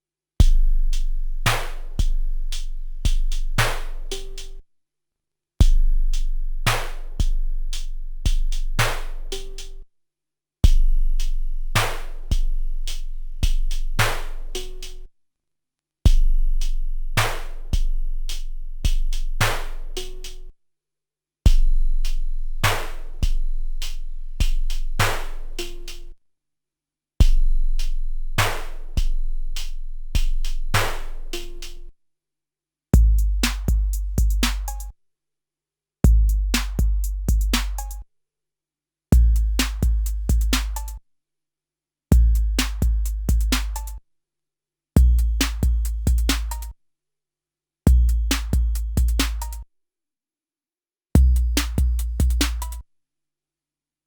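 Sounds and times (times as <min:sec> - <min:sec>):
hi-hats: 0:33.0 - 0:34.9, 0:36.1 - 0:38.0, 0:39.2 - 0:41.0, 0:42.1 - 0:44.0, 0:45.0 - 0:46.7, 0:47.9 - 0:49.6, 0:51.2 - 0:52.8
snare hits: 0:34.4 - 0:34.9, 0:36.6 - 0:36.8, 0:40.6 - 0:40.9, 0:43.5 - 0:43.9, 0:46.3 - 0:46.7, 0:49.2 - 0:49.6.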